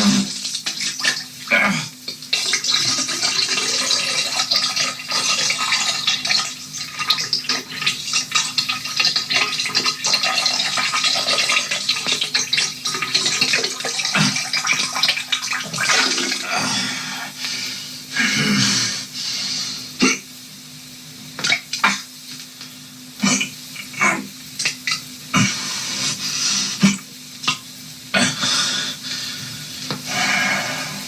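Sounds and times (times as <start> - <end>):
splashing gushing water: 0.0 - 1.6, 2.2 - 16.6.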